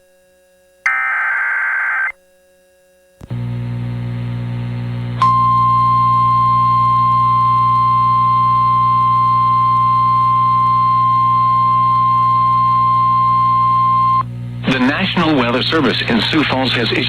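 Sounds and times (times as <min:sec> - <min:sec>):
steady warning alarm tone: 0:00.9 - 0:02.1.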